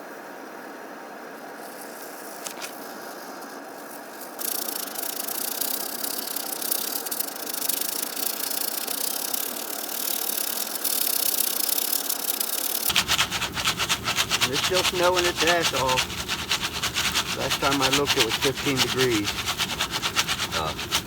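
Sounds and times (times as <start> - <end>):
popcorn kernels rattling in foil pan: 4.4 - 21.0.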